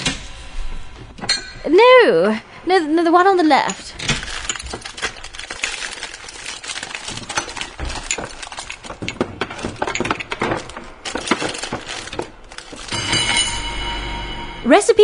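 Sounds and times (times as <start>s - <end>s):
objects clattering in a cupboard: 3.4s - 13.7s.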